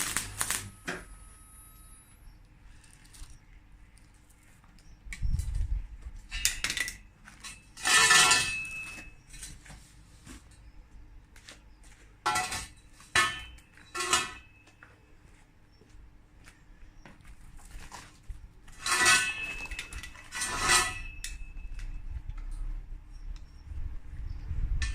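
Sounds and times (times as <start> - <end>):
steel parts clanking: 6.2 - 9.6, 12.3 - 14.6, 18.7 - 22.7.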